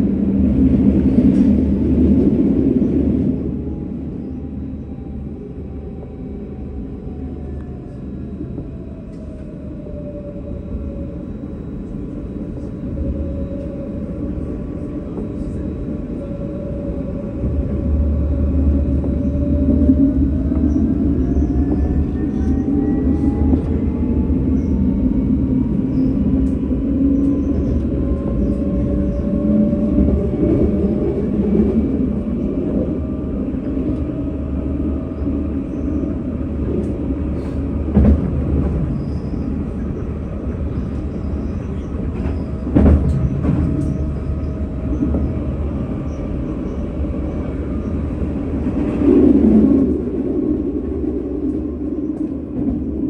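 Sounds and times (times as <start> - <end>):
tram rumbling on rails: 0.0 - 53.0
faint gliding whine: 3.4 - 37.9.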